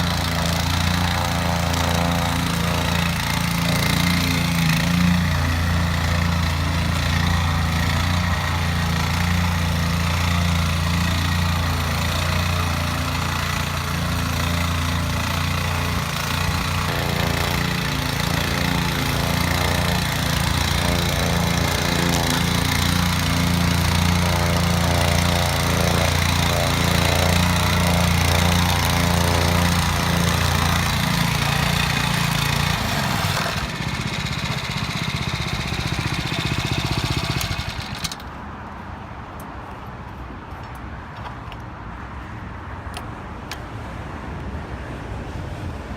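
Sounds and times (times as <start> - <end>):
plate compactor vibrating hum: 0.0 - 38.2
petrol engine running: 0.0 - 38.3.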